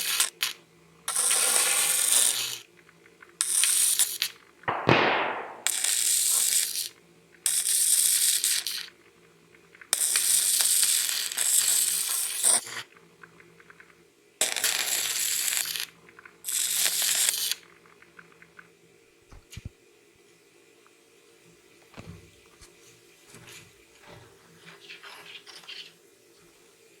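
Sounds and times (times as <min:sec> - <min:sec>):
welding arc crackling: 0:00.0 - 0:02.7, 0:03.4 - 0:08.9, 0:09.7 - 0:12.8, 0:14.4 - 0:18.7.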